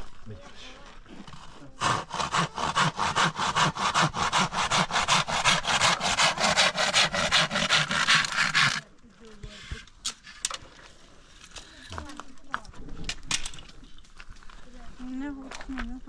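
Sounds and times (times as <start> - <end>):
back-and-forth scraping strokes: 1.2 - 10.5.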